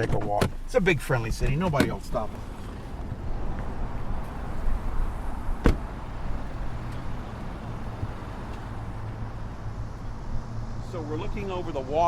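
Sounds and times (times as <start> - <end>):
car door shutting: 1.4 - 4.4, 5.2 - 6.0.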